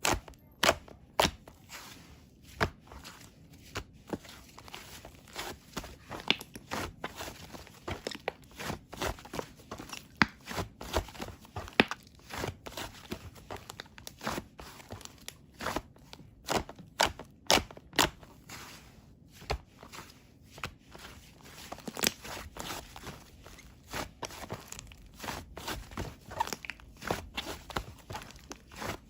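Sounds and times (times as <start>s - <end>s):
slime crackling and squelching: 20.8s - 29.0s.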